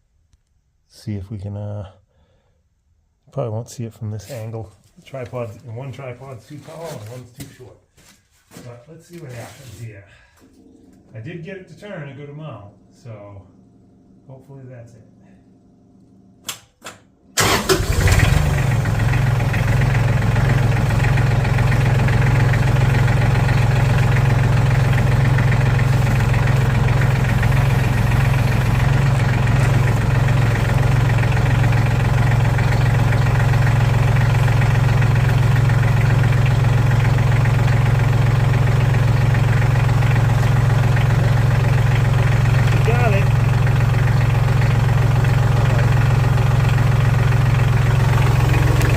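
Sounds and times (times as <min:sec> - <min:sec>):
tractor engine starting and idling: 0:15.6 - 0:48.9.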